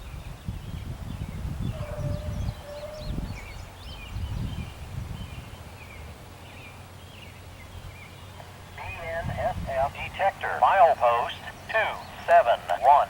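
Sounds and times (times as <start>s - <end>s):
wind gusting on microphone: 0.0s - 6.3s, 7.7s - 13.0s
birds chirping: 0.6s - 13.0s.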